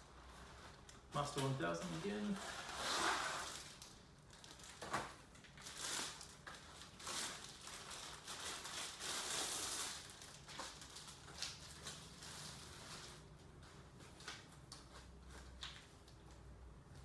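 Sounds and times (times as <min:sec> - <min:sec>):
packaging crinkling and rustling: 0:00.0 - 0:16.5.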